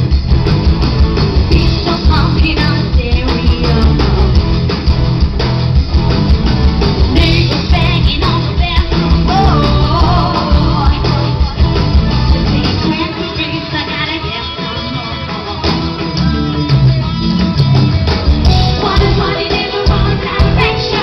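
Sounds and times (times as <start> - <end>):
steady drum beat: 0.0 - 13.1, 17.3 - 21.0
live pop-rock music: 0.0 - 21.0
person singing: 7.2 - 15.1, 18.5 - 21.0.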